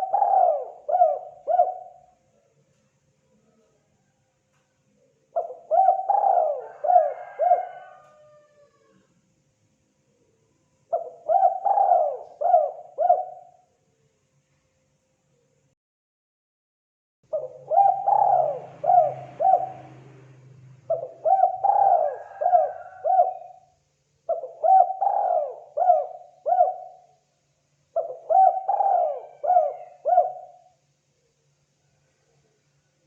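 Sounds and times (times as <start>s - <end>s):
dove cooing: 0.0s - 2.1s, 5.2s - 9.1s, 10.9s - 13.6s, 17.3s - 23.7s, 24.3s - 27.2s, 28.0s - 30.8s.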